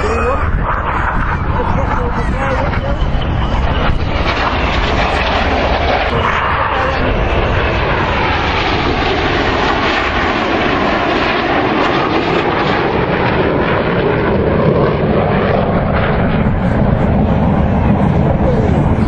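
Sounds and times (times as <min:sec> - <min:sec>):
aircraft engine flying past: 0:00.0 - 0:19.0.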